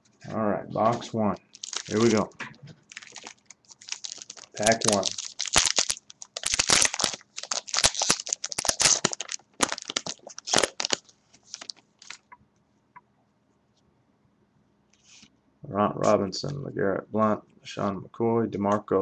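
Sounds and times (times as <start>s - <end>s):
wrapper tearing and crinkling: 1.4s - 2.3s, 2.9s - 12.3s.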